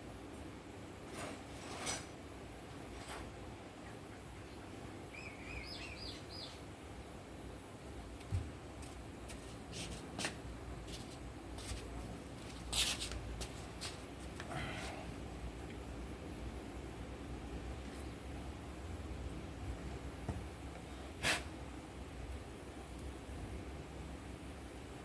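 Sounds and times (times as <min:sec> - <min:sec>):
low background noise: 0:00.0 - 0:25.0
bird chirps: 0:05.1 - 0:06.6.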